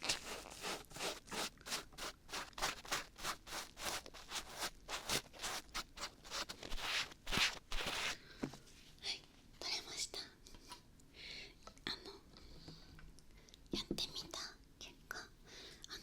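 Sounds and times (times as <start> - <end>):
glue peeling and scratching: 0.0 - 8.2.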